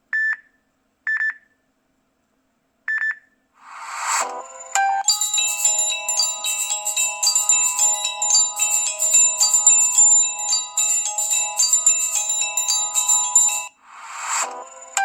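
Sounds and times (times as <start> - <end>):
high-pitched phone ringtone: 4.4 - 13.8.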